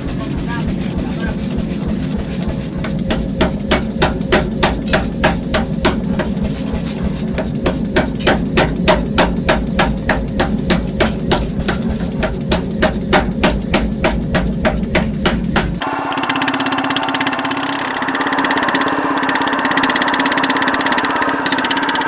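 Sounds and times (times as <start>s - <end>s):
steady low hum: 0.0s - 15.8s
hammer blows on iron: 0.0s - 15.9s.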